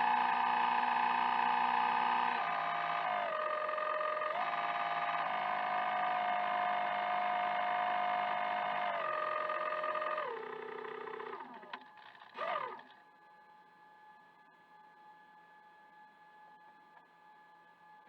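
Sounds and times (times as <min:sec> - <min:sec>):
model boat motor whining: 0:00.0 - 0:13.0.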